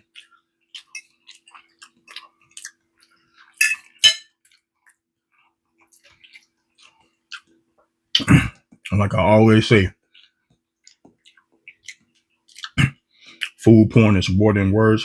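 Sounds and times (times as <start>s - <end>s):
cutlery clinking against dishes: 3.6s - 4.4s.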